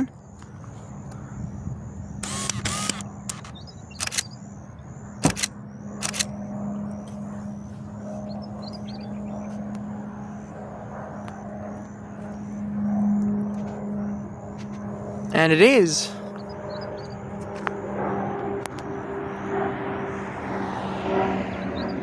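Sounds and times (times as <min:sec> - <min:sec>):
propeller droning hum: 0:00.0 - 0:22.0
high chirping: 0:02.0 - 0:05.2, 0:08.2 - 0:09.6, 0:15.4 - 0:17.4
sharp clicks: 0:02.2 - 0:04.5, 0:05.2 - 0:06.4.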